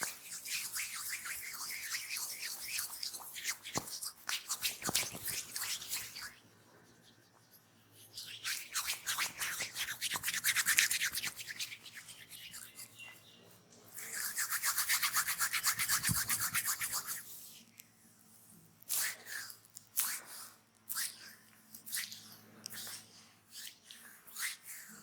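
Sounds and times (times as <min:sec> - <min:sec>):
hands rubbing oiled skin: 0:00.0 - 0:13.2, 0:13.9 - 0:17.3.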